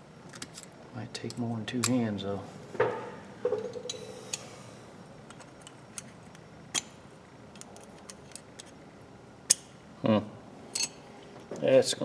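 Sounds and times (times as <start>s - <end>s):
metal parts clicking and clinking: 0.3s - 2.0s, 7.5s - 8.8s, 10.7s - 11.0s.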